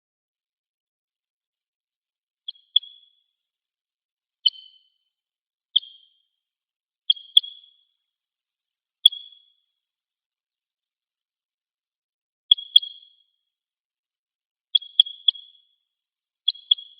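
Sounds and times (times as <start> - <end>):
bird call notes: 2.4 - 3.2, 4.4 - 5.0, 5.7 - 6.2, 7.1 - 8.0, 12.5 - 13.2, 14.7 - 15.6, 16.5 - 16.9.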